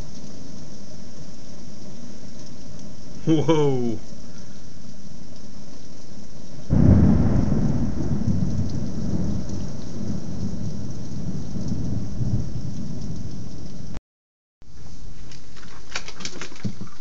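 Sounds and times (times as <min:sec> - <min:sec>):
rain falling: 0:00.0 - 0:14.0, 0:14.6 - 0:17.0
thunder clap and rumble: 0:06.7 - 0:14.0.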